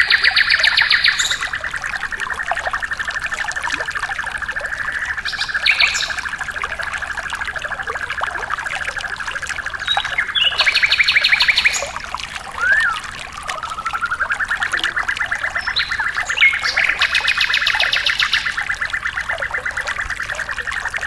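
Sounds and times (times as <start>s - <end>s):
trickling water: 0.0s - 21.0s
high bird chirps: 12.6s - 18.5s.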